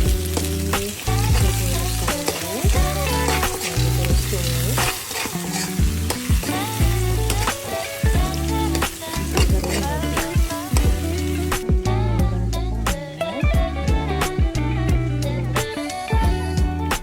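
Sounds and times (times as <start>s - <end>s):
food sizzling in a pan: 0.0s - 13.5s
background music with beat: 0.0s - 17.0s.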